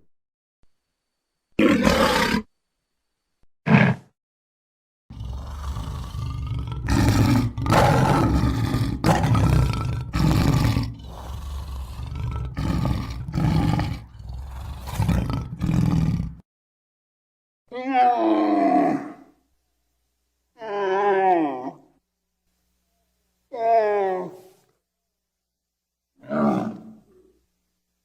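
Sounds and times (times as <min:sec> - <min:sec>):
deep growling roar: 0:05.1 - 0:16.4.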